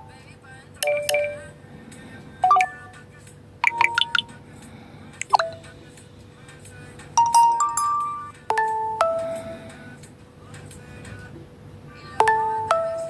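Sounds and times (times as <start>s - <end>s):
phone electronic chimes and jingles: 0.8s - 1.5s, 2.4s - 2.9s, 3.6s - 4.4s, 5.3s - 5.6s, 7.2s - 9.2s.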